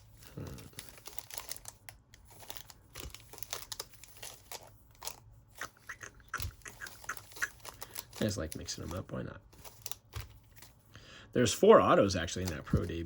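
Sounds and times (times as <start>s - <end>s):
wrapper crinkling: 0.0s - 10.8s, 11.9s - 13.0s.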